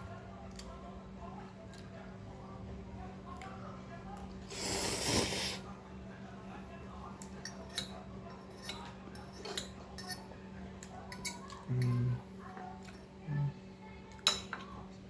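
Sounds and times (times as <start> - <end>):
cutlery clinking on a plate: 7.2 - 10.3, 11.1 - 12.1, 14.1 - 14.7
person humming mm: 13.3 - 13.6.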